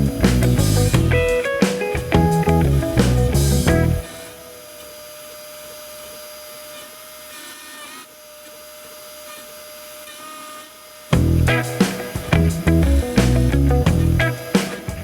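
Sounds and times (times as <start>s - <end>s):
background music: 0.0s - 4.2s, 11.2s - 15.0s
cnc router spindle whining: 4.0s - 11.1s.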